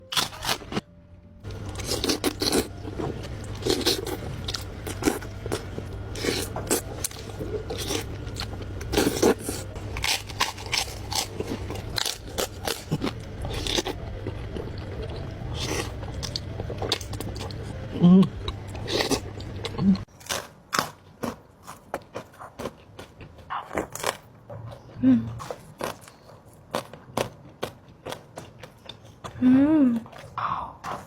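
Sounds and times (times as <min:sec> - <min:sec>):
low hum: 0:00.0 - 0:20.1
wet chewing and crunching: 0:01.4 - 0:31.0.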